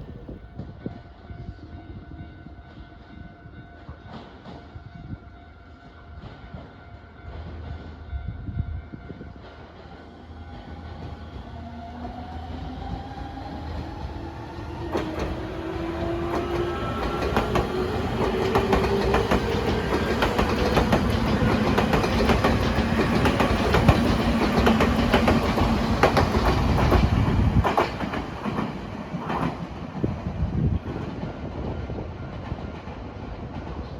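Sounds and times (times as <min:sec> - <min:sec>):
wheels clacking over rail joints: 0:14.8 - 0:29.7.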